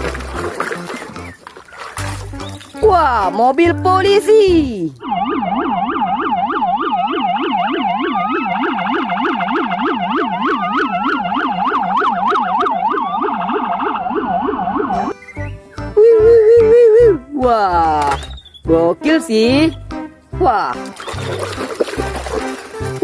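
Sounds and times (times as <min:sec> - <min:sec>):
police siren yelping: 0:05.0 - 0:15.3.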